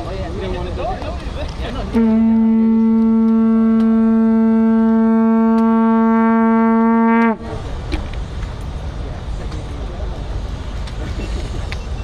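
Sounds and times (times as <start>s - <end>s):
loud horn blast: 1.9s - 7.5s.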